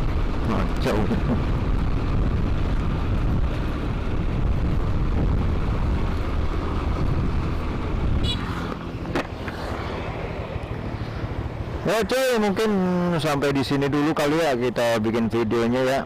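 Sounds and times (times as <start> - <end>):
wind rumble on microphone: 0.0 - 11.8.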